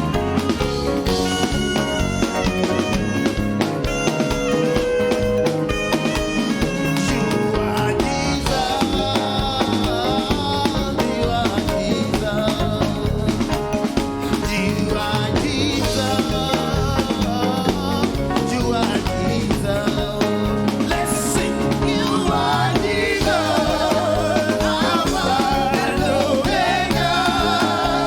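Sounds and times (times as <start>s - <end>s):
band with drum kit playing: 0.0s - 28.0s
person singing: 5.9s - 28.0s.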